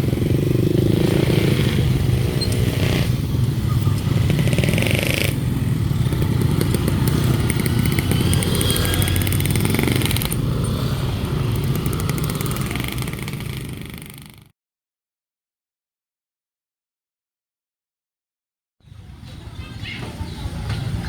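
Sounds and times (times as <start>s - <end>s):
vehicles rumbling and clattering: 0.0s - 14.5s, 18.8s - 21.0s.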